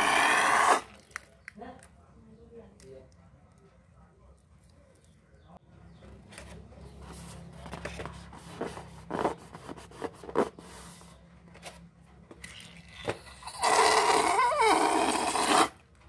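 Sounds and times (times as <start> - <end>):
balloon rubbing and scraping: 0.0 - 0.9, 8.0 - 11.2, 13.9 - 15.8
balloon squeaks: 0.0 - 0.9, 13.2 - 15.8.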